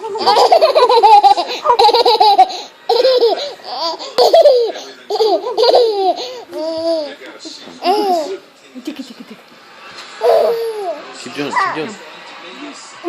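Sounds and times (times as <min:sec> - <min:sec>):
baby laughing: 0:00.0 - 0:07.2, 0:07.8 - 0:08.4, 0:10.2 - 0:11.9.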